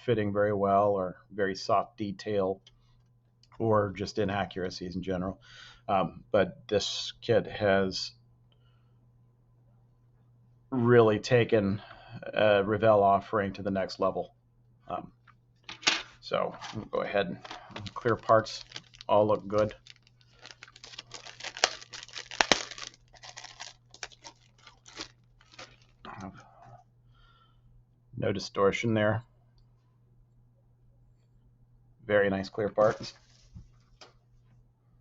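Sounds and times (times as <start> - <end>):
faint low hum: 0.0 - 35.0
person speaking: 16.1 - 26.6, 32.0 - 33.3
plastic crinkling and rustling: 16.6 - 26.3.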